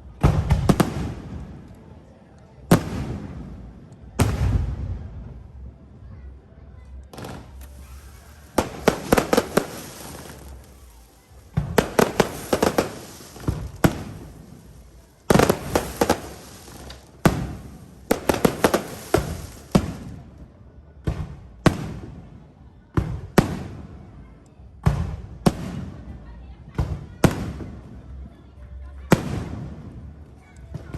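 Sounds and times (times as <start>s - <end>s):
fireworks exploding: 0.2s - 1.8s, 2.7s - 5.6s, 7.1s - 22.4s, 23.0s - 24.0s, 24.8s - 26.2s, 26.8s - 27.9s, 29.1s - 30.1s.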